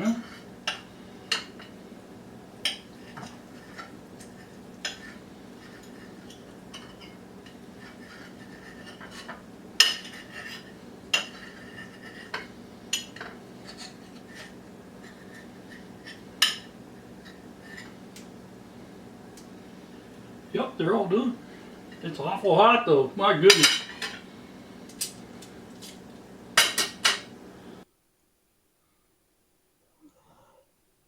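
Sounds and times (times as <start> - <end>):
cutlery clinking on a plate: 4.8 - 7.2, 7.8 - 14.5, 15.3 - 17.9, 23.5 - 24.2, 26.6 - 27.3.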